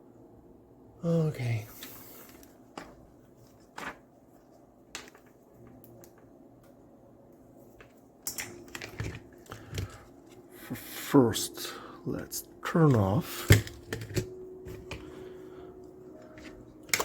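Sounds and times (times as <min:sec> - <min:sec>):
rustling: 0:01.7 - 0:06.3.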